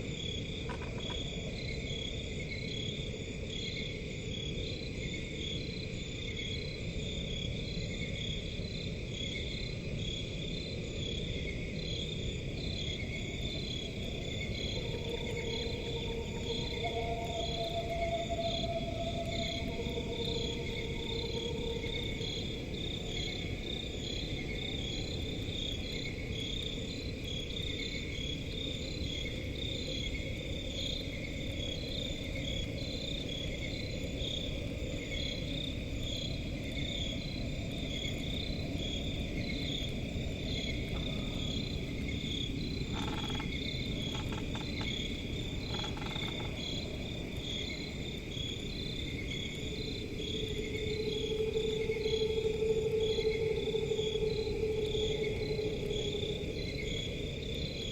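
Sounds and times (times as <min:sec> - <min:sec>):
crickets chirping: 0:00.0 - 0:57.9
low rumbling drone: 0:13.4 - 0:24.0, 0:49.7 - 0:57.9.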